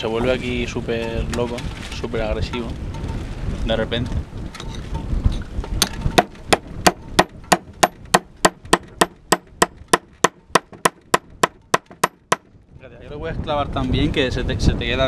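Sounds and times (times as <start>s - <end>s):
hammer striking chisel on stone: 5.8s - 12.4s.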